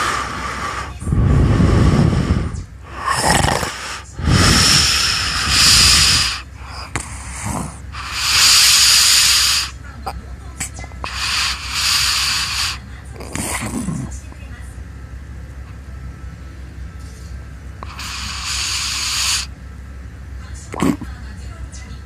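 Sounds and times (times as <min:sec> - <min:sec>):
person snoring: 0:00.0 - 0:09.8, 0:11.1 - 0:14.1, 0:17.8 - 0:19.5.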